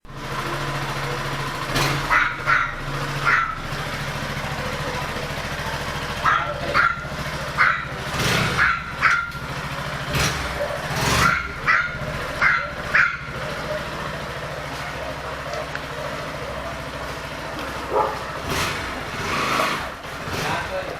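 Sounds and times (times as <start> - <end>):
motorcycle engine idling: 0.1 - 20.9
dog barking: 2.1 - 3.7, 6.2 - 9.4, 10.5 - 14.1, 17.8 - 18.4.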